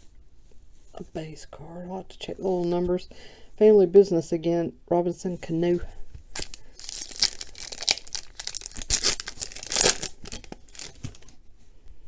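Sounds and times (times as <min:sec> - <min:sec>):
wrapper tearing and crinkling: 0:06.3 - 0:11.3.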